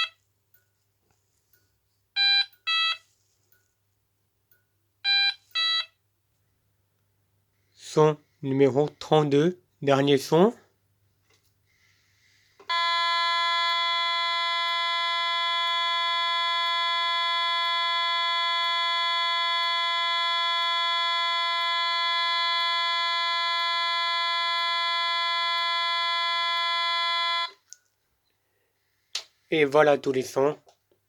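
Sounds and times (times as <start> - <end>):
fire alarm steady tone: 12.7 - 27.6.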